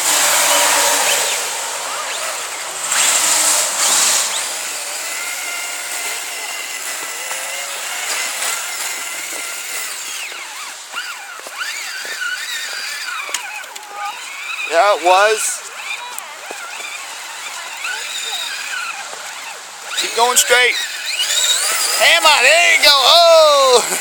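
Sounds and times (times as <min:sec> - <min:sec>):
loud hissing burst: 0:00.0 - 0:07.3
electric motor and gears whining: 0:00.0 - 0:24.0.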